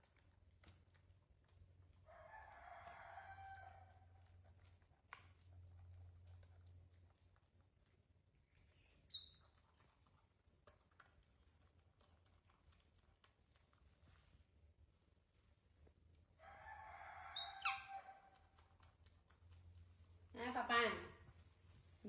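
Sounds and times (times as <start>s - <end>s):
small bird chirping: 8.4s - 9.6s, 17.2s - 18.2s.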